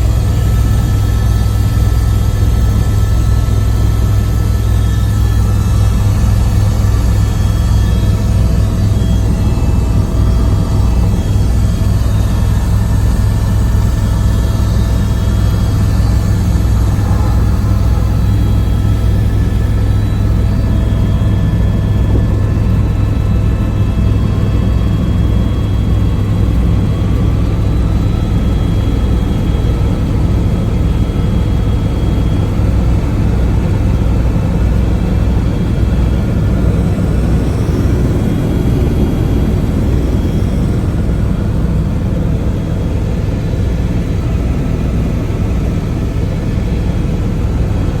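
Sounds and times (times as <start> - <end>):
faint whining tones: 0.0 - 47.9
helicopter rotor drone: 0.0 - 48.0.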